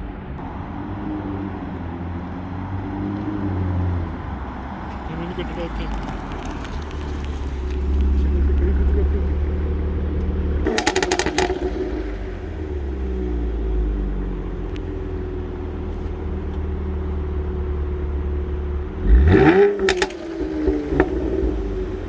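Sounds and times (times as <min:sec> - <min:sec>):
car engine idling: 0:00.0 - 0:22.0
engine revving: 0:00.0 - 0:22.0
exhaust pops and crackles: 0:04.3 - 0:17.4, 0:18.1 - 0:22.0.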